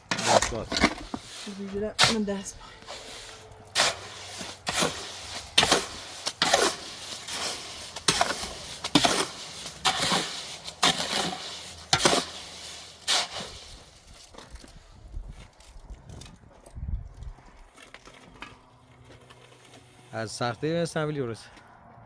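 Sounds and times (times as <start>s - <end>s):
hand tool scraping mortar: 0.0s - 14.8s.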